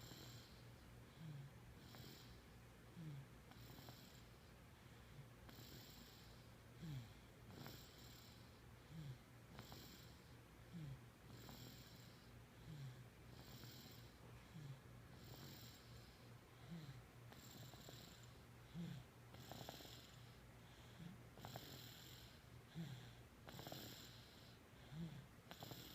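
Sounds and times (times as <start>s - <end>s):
faint snoring: 0.0s - 25.9s.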